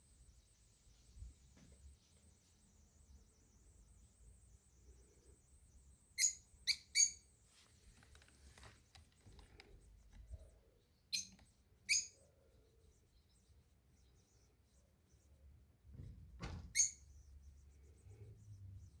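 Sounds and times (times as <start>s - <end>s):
small animal squeaky calls: 6.2s - 7.3s, 11.1s - 12.3s, 16.8s - 17.0s.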